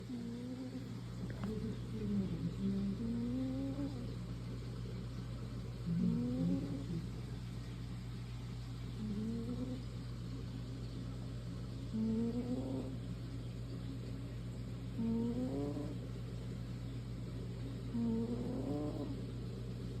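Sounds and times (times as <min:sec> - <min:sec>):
cat snoring: 0:12.0 - 0:13.0, 0:15.0 - 0:16.0, 0:17.9 - 0:19.2.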